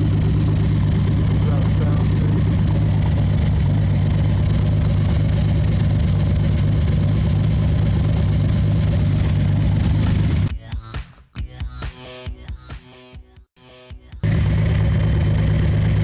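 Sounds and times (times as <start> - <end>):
car engine idling: 0.0 - 10.5, 14.2 - 16.0.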